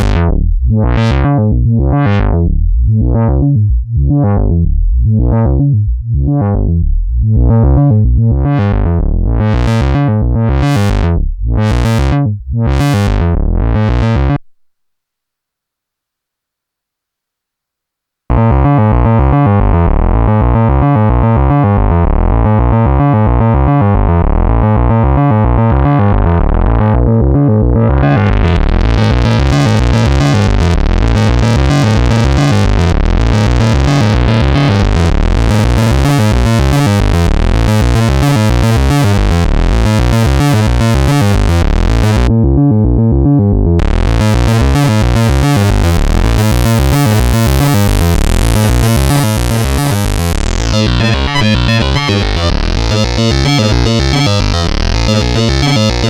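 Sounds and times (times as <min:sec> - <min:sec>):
synthesizer repeating note pattern: 0:00.0 - 0:14.4, 0:18.3 - 0:42.3, 0:43.8 - 0:56.0.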